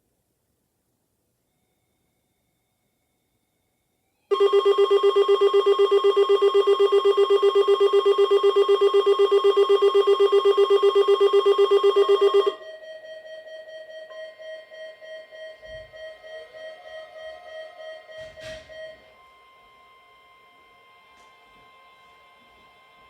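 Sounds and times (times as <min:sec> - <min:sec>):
faint steady tones: 0:01.1 - 0:23.0
rapid alarm beeping: 0:04.3 - 0:21.0.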